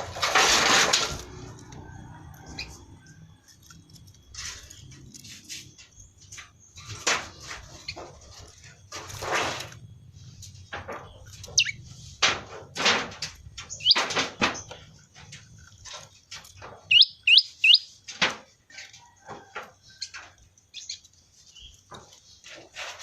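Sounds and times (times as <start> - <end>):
bird harsh scratchy calls: 11.3 - 12.2, 13.6 - 14.9, 16.8 - 18.0.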